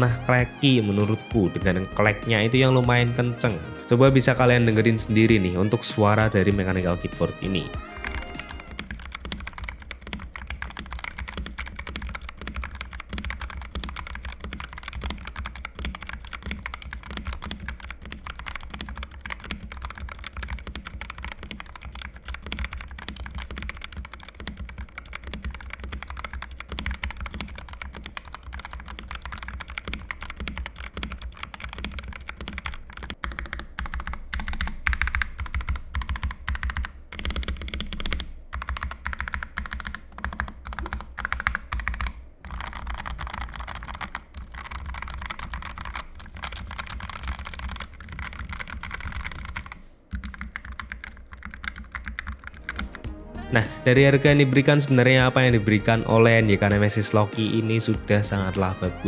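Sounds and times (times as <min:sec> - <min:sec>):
clacky mechanical keyboard typing: 0:07.5 - 0:53.0.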